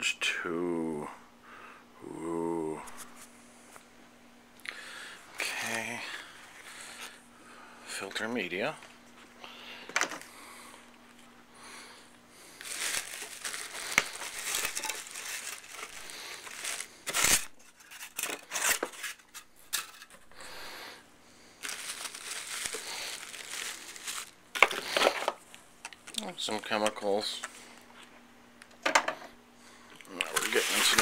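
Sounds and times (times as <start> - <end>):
packaging crinkling and tearing: 12.6 - 19.9, 21.6 - 25.4, 30.1 - 31.0.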